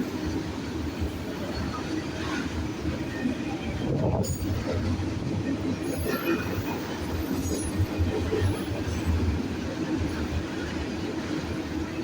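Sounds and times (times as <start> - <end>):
steel wheels rumbling on rails: 0.0 - 12.0.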